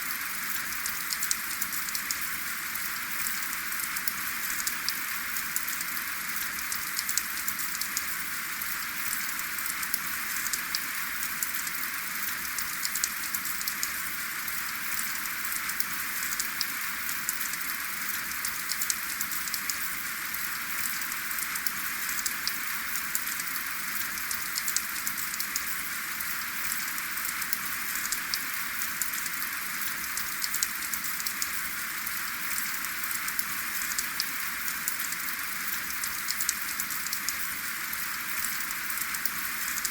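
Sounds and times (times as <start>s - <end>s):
raindrops ticking on a surface: 0.4s - 39.9s.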